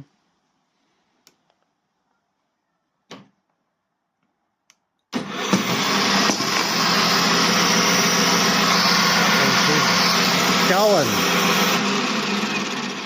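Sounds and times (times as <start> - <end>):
brushcutter motor running: 5.2 - 13.0.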